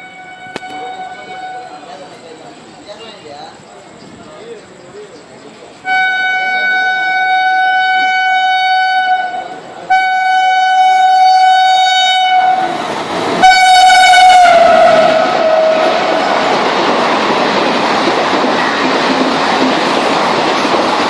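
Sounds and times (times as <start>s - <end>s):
train horn blasts: 0.0s - 1.8s, 5.8s - 12.8s, 13.4s - 16.2s
train running noise: 0.0s - 21.0s.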